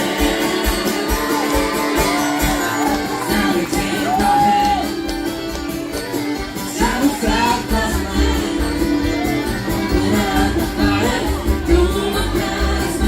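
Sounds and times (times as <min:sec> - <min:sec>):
person singing: 0:00.0 - 0:05.3, 0:06.6 - 0:13.0
band playing country-folk song: 0:00.0 - 0:13.0.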